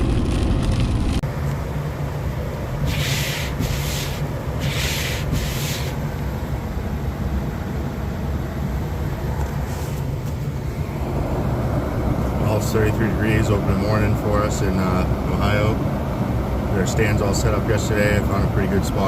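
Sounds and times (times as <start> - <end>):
car road rumble: 0.0 - 19.0
short rubbing swishes: 2.8 - 6.0.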